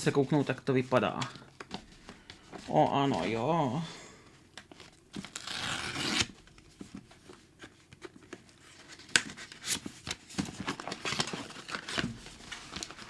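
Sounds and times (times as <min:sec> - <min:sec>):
packaging tearing and rustling: 0:05.2 - 0:06.4, 0:08.8 - 0:13.0.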